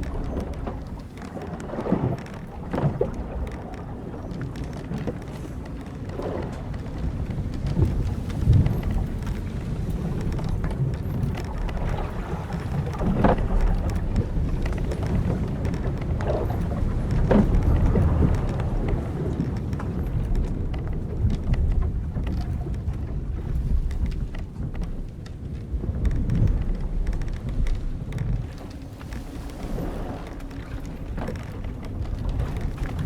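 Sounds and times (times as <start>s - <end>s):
wind and sea rumble: 0.0s - 33.0s
wooden ship timbers creaking: 0.0s - 33.0s.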